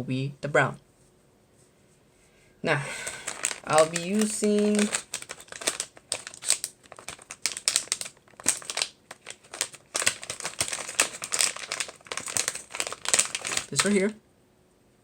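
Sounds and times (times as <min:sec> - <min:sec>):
cable wires crinkling: 0:02.9 - 0:14.2.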